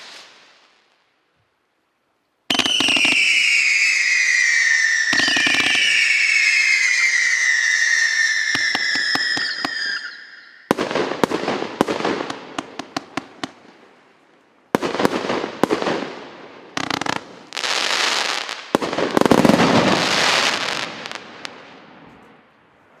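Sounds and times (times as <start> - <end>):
fireworks whistling: 0.0 - 0.7, 2.5 - 13.7, 16.8 - 22.5
fireworks bangs and crackling: 0.0 - 1.0, 2.5 - 23.0.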